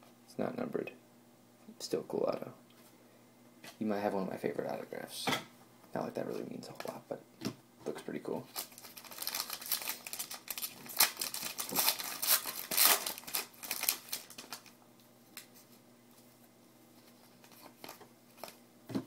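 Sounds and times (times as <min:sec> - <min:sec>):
card pack wrapper crinkling: 0:08.5 - 0:14.8.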